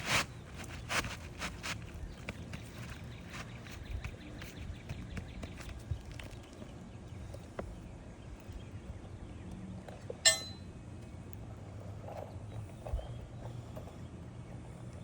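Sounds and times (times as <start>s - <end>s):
metal tool clinking on metal: 10.2s - 10.7s.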